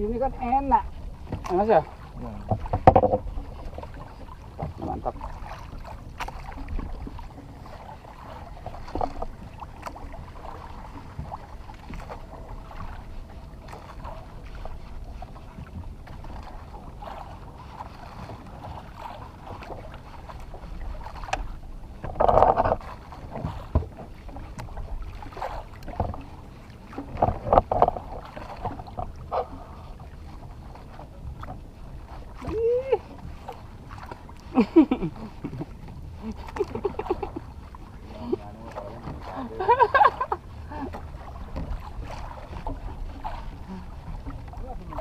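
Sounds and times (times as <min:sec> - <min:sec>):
low wind: 0:00.0 - 0:45.0
water around boat hull: 0:00.0 - 0:45.0
knocks on boat: 0:01.3 - 0:03.7, 0:21.3 - 0:24.7, 0:27.0 - 0:29.5.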